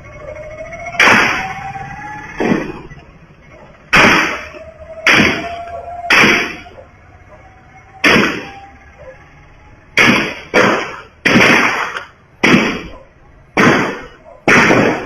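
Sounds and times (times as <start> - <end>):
rifle gunshots: 3.9 - 6.7, 8.0 - 8.6, 10.0 - 15.0.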